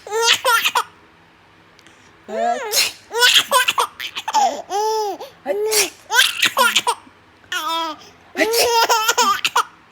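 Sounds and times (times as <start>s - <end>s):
baby laughing: 0.0s - 1.0s, 2.3s - 5.3s, 6.1s - 9.8s.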